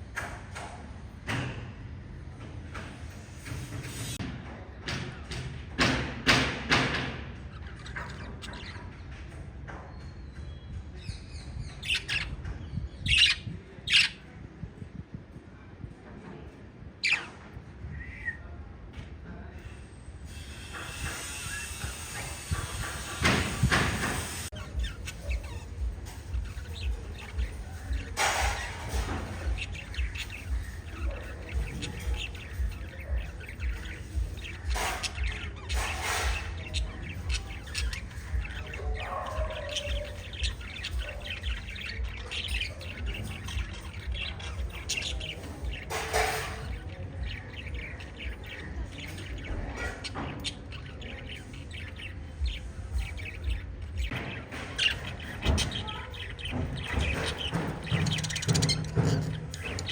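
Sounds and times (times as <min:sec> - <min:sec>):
lovebirds chirping: 0:06.3 - 0:14.4, 0:20.3 - 0:59.9
sharp bird calls: 0:20.4 - 0:59.9.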